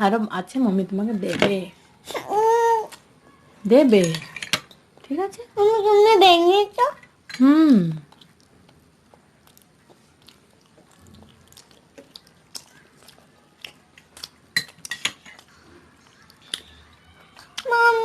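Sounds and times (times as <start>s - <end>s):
cutlery clinking on plates: 4.0s - 4.8s, 14.6s - 15.5s
chewing: 8.0s - 17.7s.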